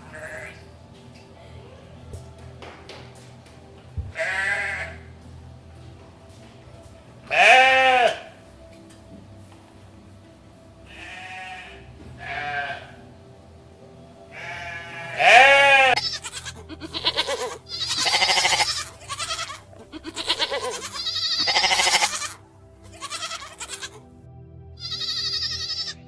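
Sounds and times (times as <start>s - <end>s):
goats bleating: 4.1s - 5.1s, 7.3s - 8.3s, 10.9s - 13.0s, 14.3s - 24.0s, 24.8s - 26.0s.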